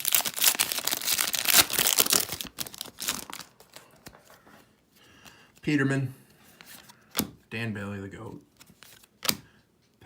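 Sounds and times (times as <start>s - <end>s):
plastic wrapper crinkling: 0.0s - 4.6s.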